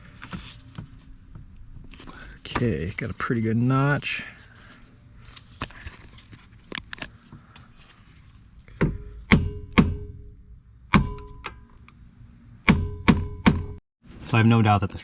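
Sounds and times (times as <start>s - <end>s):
hammer striking metal chisel: 8.8s - 10.3s, 11.0s - 11.7s, 12.7s - 13.8s.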